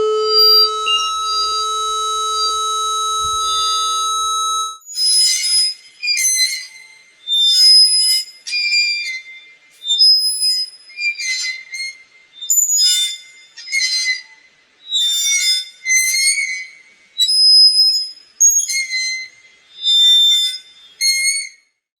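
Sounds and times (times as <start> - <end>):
swing squeaking: 0.0 - 4.8.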